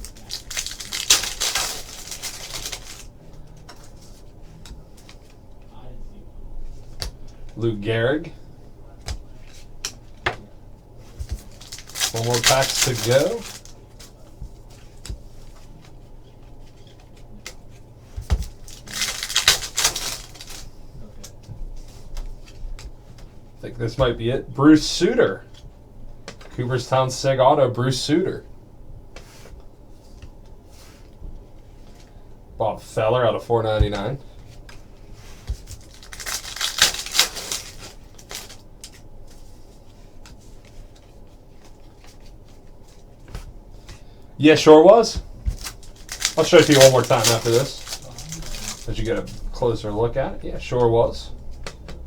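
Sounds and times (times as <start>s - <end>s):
foil wrapper tearing and crinkling: 0.0s - 3.2s, 11.4s - 13.8s, 18.4s - 20.7s, 35.6s - 38.6s, 45.5s - 49.3s
trading cards rustling: 0.0s - 5.4s, 9.0s - 23.4s, 33.8s - 52.0s.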